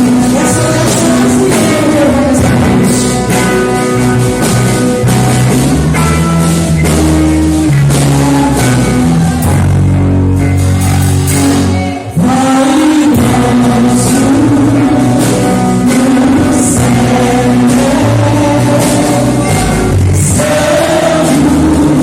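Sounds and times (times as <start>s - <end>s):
worship band with singing: 0.0s - 22.0s.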